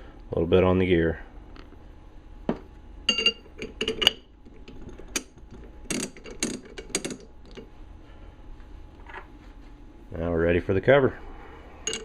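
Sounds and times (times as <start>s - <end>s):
ratchet parts clicking and clinking: 3.1s - 7.7s.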